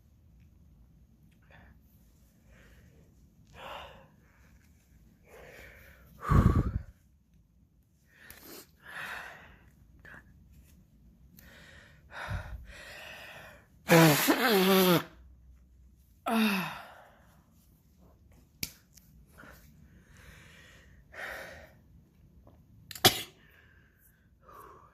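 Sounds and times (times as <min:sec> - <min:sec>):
woman breathing and sniffling: 0:01.4 - 0:07.2, 0:08.0 - 0:10.6
loud voiced sneeze: 0:13.9 - 0:15.2, 0:22.9 - 0:23.4.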